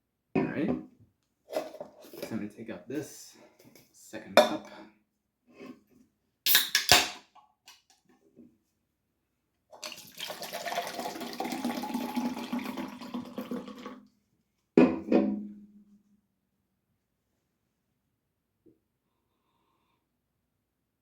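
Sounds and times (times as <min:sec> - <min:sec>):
drink pouring into cup: 0:09.8 - 0:14.0.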